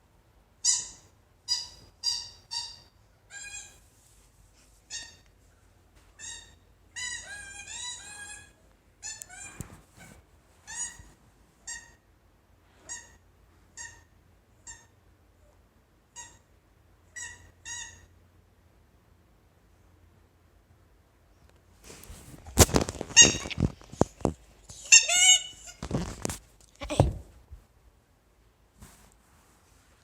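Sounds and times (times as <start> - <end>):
squeaky toy squeaking: 0.6 - 3.8, 4.9 - 5.2, 6.2 - 9.6, 10.6 - 11.0, 11.7 - 12.0, 12.9 - 13.2, 13.8 - 14.9, 16.2 - 16.5, 17.2 - 18.1, 23.1 - 23.7, 24.7 - 25.9.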